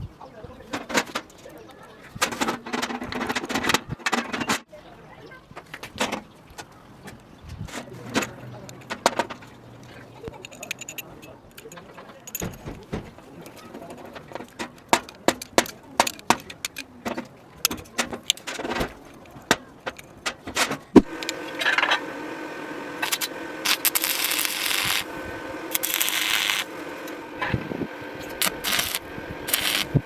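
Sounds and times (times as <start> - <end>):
metal parts clinking: 10.4 - 12.6
hiss bursts: 21.0 - 30.0
small motor running: 21.0 - 30.0.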